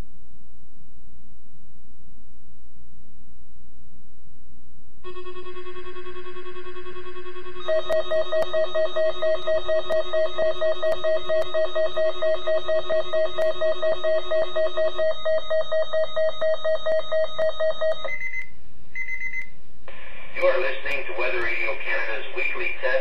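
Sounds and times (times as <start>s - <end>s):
alert alarm beeping rapidly: 5.0s - 18.4s.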